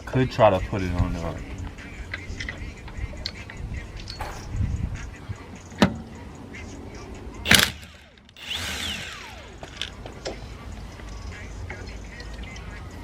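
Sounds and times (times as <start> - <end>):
socket wrench clicking on lug nut: 2.0 - 4.2, 7.5 - 8.4.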